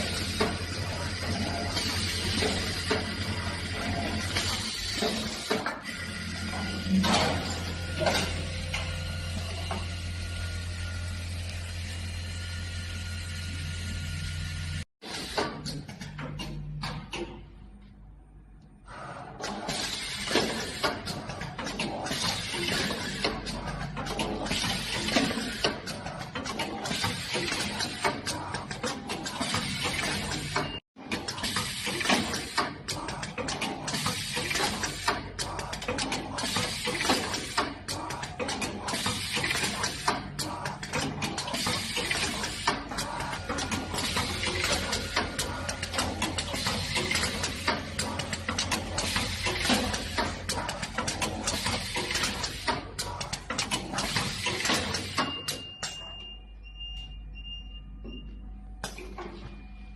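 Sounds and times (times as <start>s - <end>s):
sewing machinery clattering: 19.3s - 55.6s.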